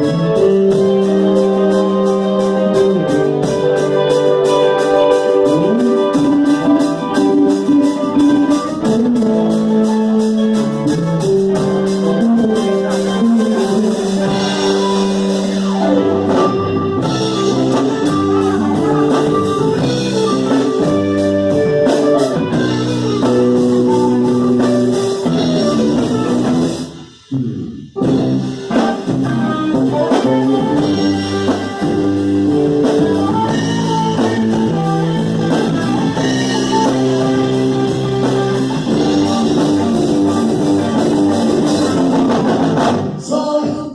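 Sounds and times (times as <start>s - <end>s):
live band music: 0.0s - 43.9s.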